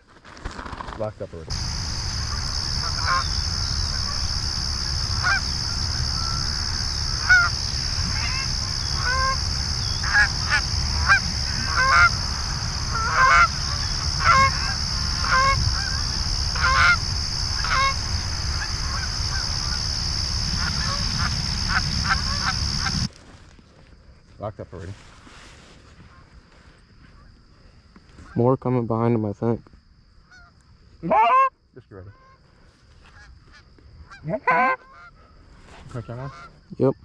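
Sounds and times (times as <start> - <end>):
geese honking and clucking: 1.5 - 23.1, 31.1 - 31.5, 36.0 - 36.5.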